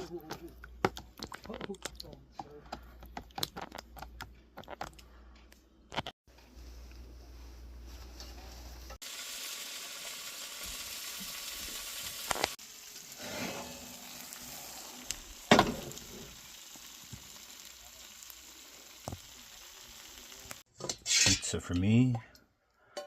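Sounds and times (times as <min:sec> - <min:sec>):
food sizzling: 0:07.9 - 0:20.7.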